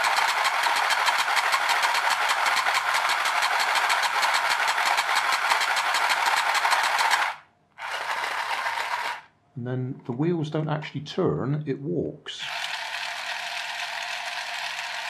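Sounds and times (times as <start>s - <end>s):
toy mechanism clattering clicks: 0.0s - 9.3s, 12.4s - 15.0s.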